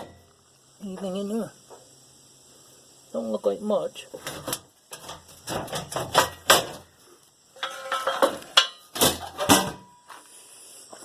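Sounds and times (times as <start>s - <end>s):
metal hand tools clattering: 7.6s - 9.8s.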